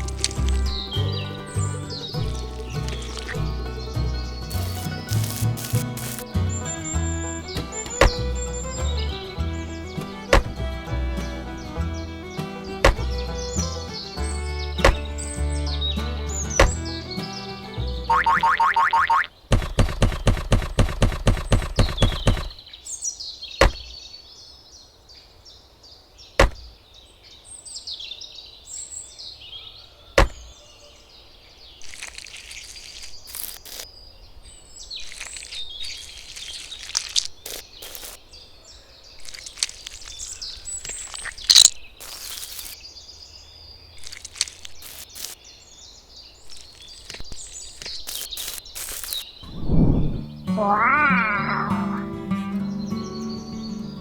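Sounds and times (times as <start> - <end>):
birds chirping: 0.0 - 54.0
quick even pulses: 4.5 - 6.3, 36.9 - 38.2, 44.0 - 45.4, 47.1 - 50.0
sharp clicks and knocks: 19.5 - 22.6.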